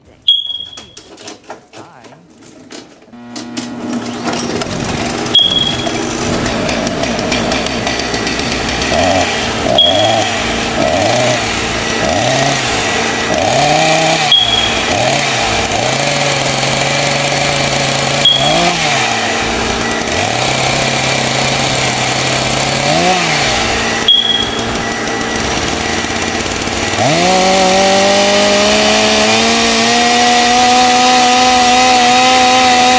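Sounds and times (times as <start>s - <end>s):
short high tone: 0.2s - 1.0s, 5.4s - 6.1s, 9.7s - 10.3s, 14.2s - 15.1s, 18.2s - 18.7s, 23.7s - 26.2s
small engine revving: 3.2s - 32.9s.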